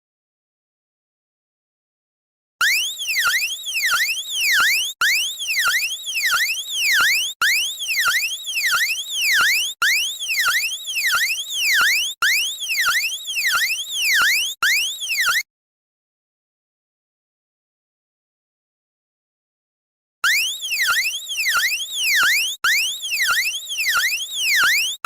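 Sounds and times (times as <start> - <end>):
electronic emergency siren tone: 2.6 - 15.5, 20.2 - 25.0.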